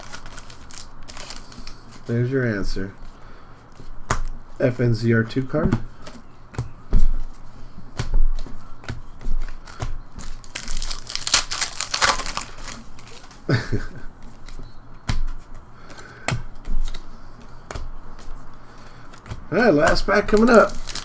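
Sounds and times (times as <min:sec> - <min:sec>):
wrapper crinkling and tearing: 0:00.0 - 0:02.1, 0:09.6 - 0:13.5, 0:19.9 - 0:21.0
cards clicking: 0:09.4 - 0:13.4, 0:19.1 - 0:21.0.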